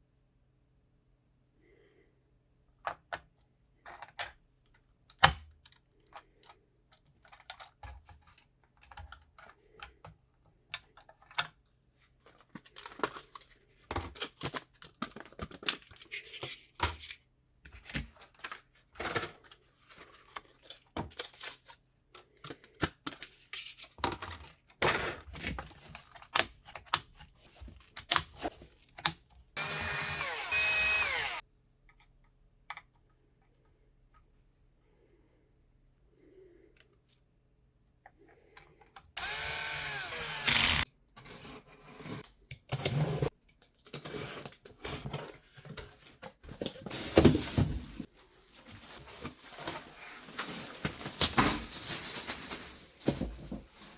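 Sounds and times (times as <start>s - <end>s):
packaging rustling: 45.2s - 53.9s.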